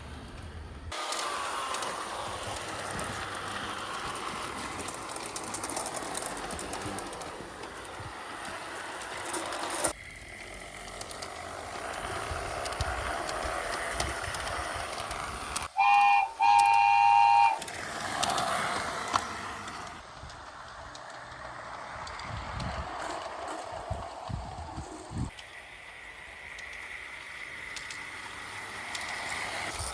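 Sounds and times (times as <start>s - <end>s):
marbles rolling along tracks: 0.9s - 29.9s
toy train horn tooting: 15.7s - 17.8s.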